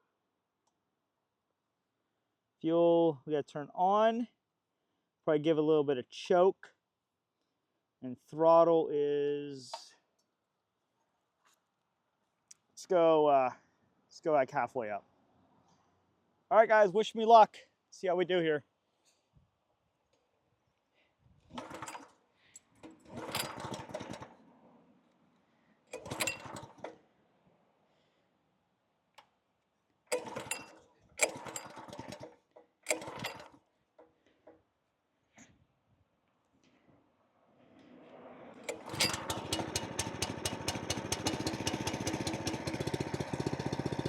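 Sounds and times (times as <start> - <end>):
recoil starter cranking engine: 21.5 - 24.5, 25.9 - 27.0, 30.1 - 34.6, 38.6 - 44.0.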